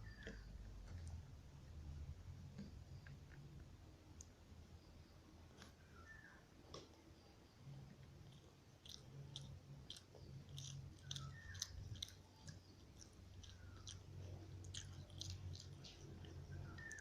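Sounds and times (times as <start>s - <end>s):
chewing with wet mouth clicks: 8.1s - 17.0s.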